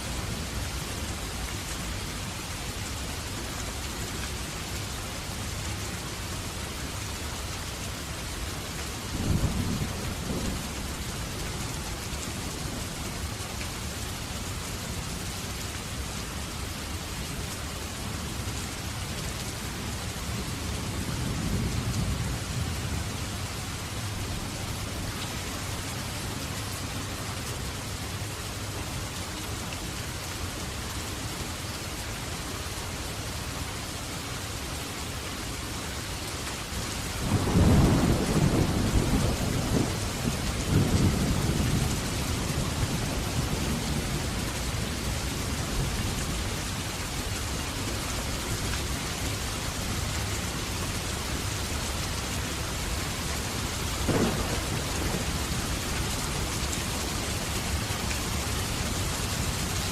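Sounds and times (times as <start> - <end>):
heavy rain: 0.0 - 59.9
rolling thunder: 9.2 - 10.8, 37.2 - 44.2, 54.0 - 56.3
sharp crack of thunder: 37.2 - 42.0, 54.0 - 55.8.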